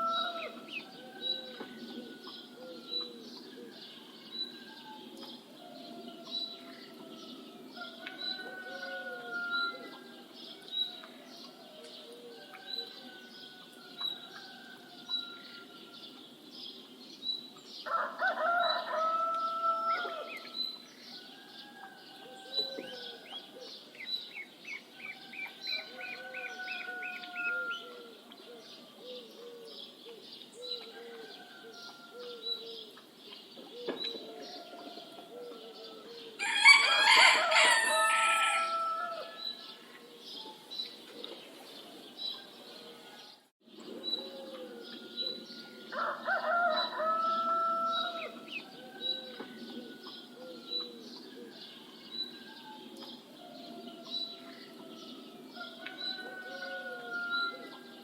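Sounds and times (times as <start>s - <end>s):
rooster crowing: 0.0s - 3.0s, 5.8s - 10.3s, 17.9s - 20.5s, 25.0s - 28.2s, 34.4s - 39.8s, 45.6s - 51.6s, 53.5s - 57.8s.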